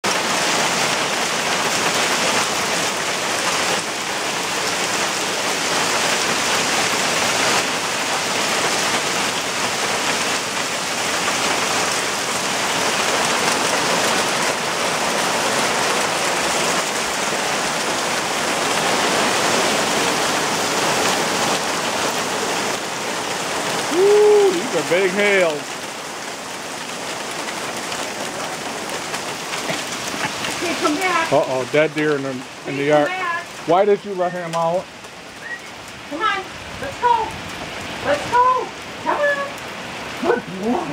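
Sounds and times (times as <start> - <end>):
hail and rain pelting down: 0.0 - 40.9.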